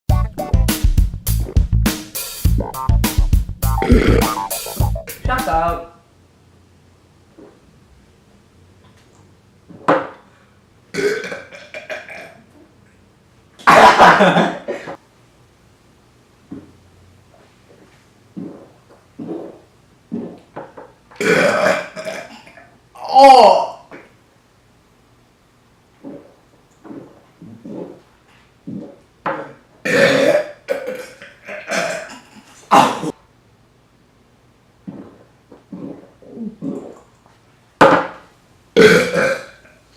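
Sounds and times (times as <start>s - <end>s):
person belching: 3.6s - 5.2s, 10.9s - 12.5s, 21.2s - 24.0s, 28.7s - 33.2s, 38.8s - 39.7s.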